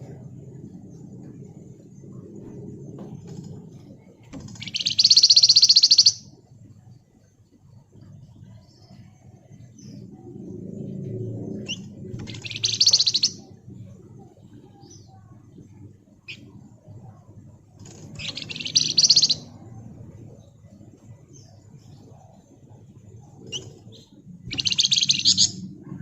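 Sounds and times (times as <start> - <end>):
low background rumble: 0.0 - 26.0
songbird buzzing trills: 11.7 - 13.4.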